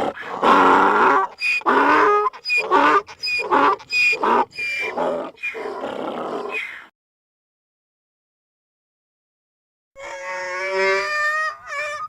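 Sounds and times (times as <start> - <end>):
donkey braying: 0.1 - 6.7, 10.0 - 12.0.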